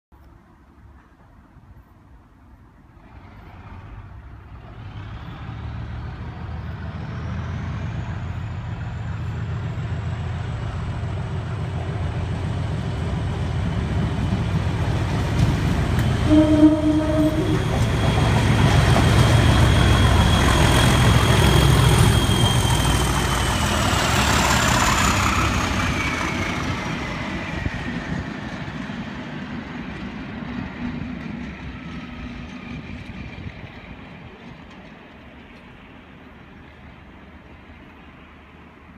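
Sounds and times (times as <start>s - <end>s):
diesel locomotive engine working hard: 3.0s - 38.9s
locomotive horn note: 16.2s - 17.8s
turbocharger whistling: 19.1s - 24.0s.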